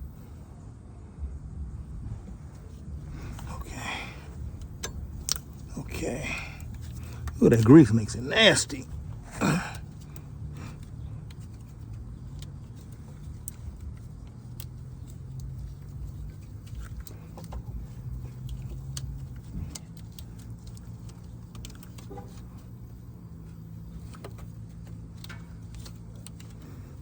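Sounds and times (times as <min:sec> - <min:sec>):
steady low hum: 0:00.0 - 0:27.0
light clicks and taps: 0:08.8 - 0:27.0.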